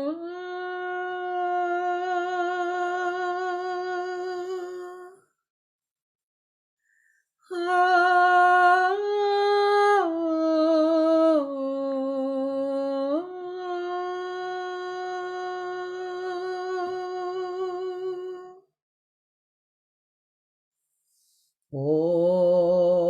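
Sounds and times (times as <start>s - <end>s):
woman singing long held tones: 0.0s - 5.2s, 7.5s - 18.6s, 21.7s - 23.0s.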